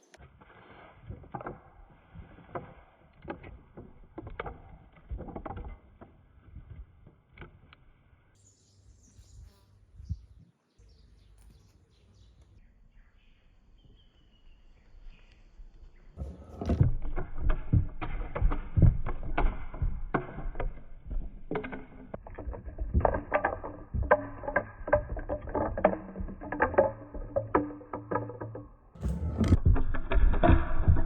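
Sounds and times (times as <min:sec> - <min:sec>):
marbles clattering down track: 0:16.2 - 0:31.0.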